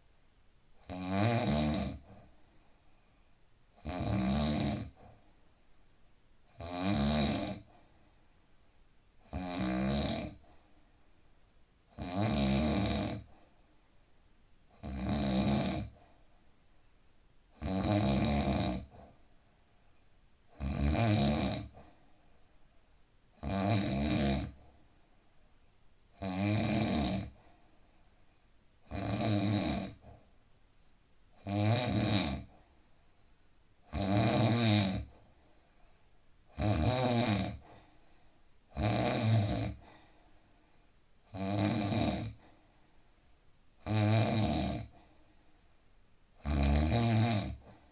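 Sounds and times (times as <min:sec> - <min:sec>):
man snoring: 0:00.8 - 0:02.1, 0:03.8 - 0:05.0, 0:06.6 - 0:07.7, 0:09.3 - 0:10.4, 0:12.0 - 0:13.3, 0:14.8 - 0:16.0, 0:17.6 - 0:19.0, 0:20.6 - 0:21.8, 0:23.4 - 0:24.6, 0:26.2 - 0:27.4, 0:28.9 - 0:30.1, 0:31.4 - 0:32.5, 0:33.9 - 0:35.1, 0:36.5 - 0:37.6, 0:38.7 - 0:39.8, 0:41.3 - 0:42.4, 0:43.8 - 0:45.0, 0:46.4 - 0:47.7.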